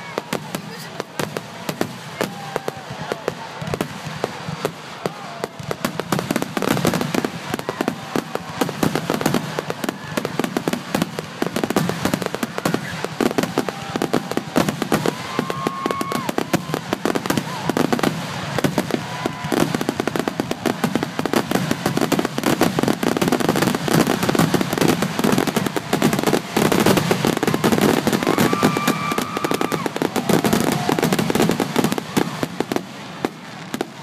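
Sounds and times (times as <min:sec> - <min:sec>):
fireworks bangs and crackles: 0:00.0 - 0:34.0.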